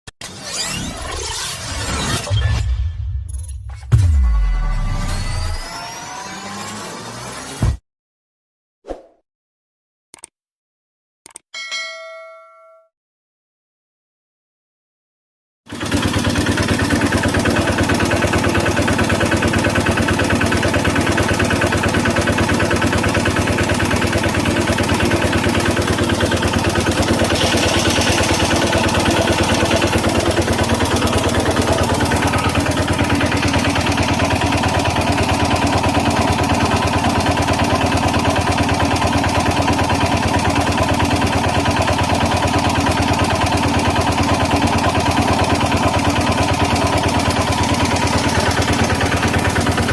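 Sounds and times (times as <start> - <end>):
engine idling: 15.7 - 49.9.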